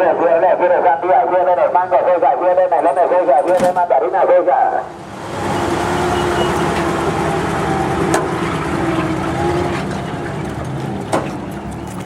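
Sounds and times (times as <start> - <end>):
truck engine running: 4.8 - 12.0.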